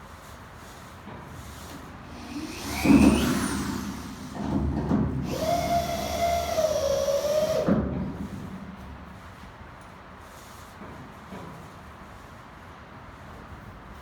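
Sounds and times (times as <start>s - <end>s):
power drill whining: 2.1s - 7.8s.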